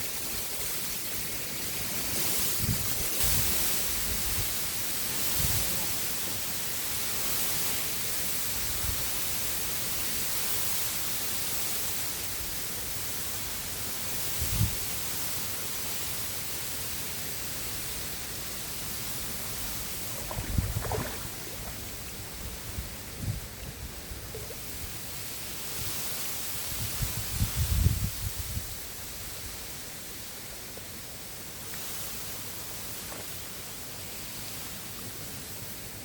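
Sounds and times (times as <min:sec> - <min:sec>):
wind buffeting microphone: 0:02.5 - 0:04.6, 0:19.5 - 0:25.0, 0:26.7 - 0:28.9
river water rushing: 0:18.6 - 0:23.1.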